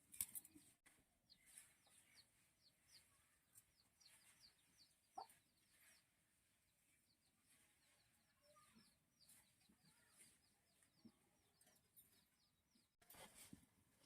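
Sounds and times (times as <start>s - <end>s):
chicken peeping: 1.3s - 6.1s.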